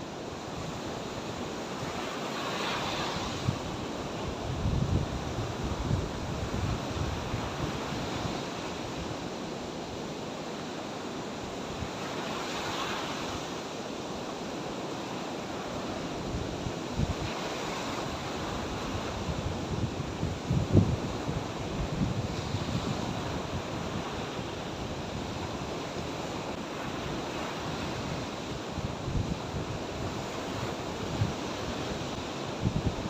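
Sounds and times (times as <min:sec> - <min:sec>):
sea surf washing onto shore: 0:00.0 - 0:33.0
wind buffeting microphone: 0:03.2 - 0:08.5, 0:16.2 - 0:26.2, 0:26.9 - 0:33.0.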